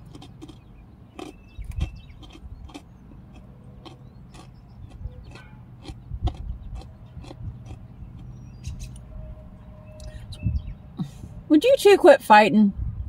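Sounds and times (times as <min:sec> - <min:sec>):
chewing crunchy chips: 0:00.0 - 0:08.8.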